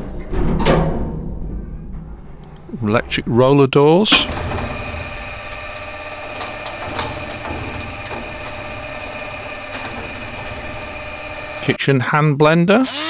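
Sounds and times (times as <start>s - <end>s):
roller door motor humming: 2.1s - 11.8s.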